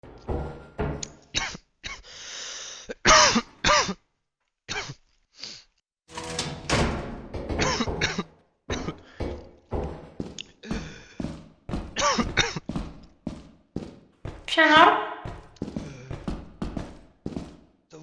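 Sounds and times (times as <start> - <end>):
people coughing: 2.9 - 4.0, 7.6 - 9.1, 12.0 - 12.7.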